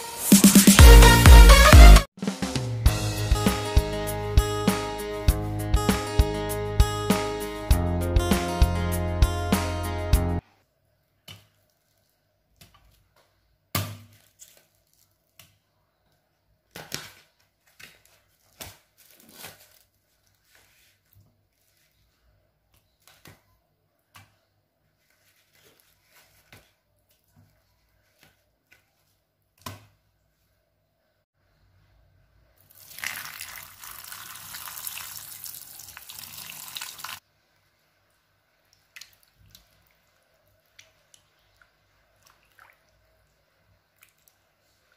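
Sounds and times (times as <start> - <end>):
packaging rustling and crinkling: 14.1 - 15.4, 16.8 - 22.2.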